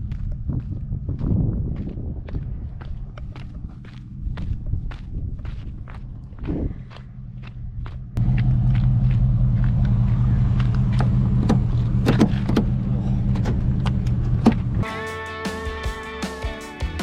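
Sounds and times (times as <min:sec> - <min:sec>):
low engine drone: 0:05.9 - 0:14.9
sharp knocks and clicks: 0:10.7 - 0:12.8
music: 0:14.8 - 0:17.0.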